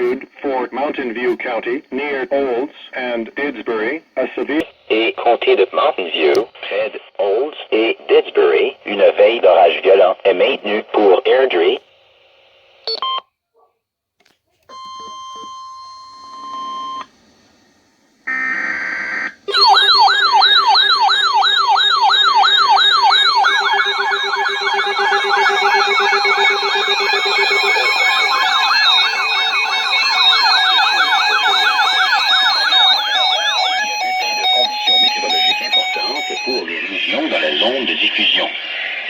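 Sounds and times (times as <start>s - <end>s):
electronic warble alert signal: 19.5s - 36.6s
steady beep: 19.5s - 36.8s.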